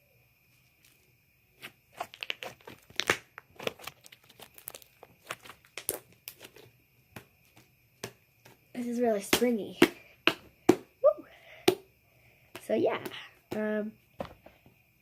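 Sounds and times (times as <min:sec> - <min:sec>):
slime squished by hand crackling: 0:01.6 - 0:06.6.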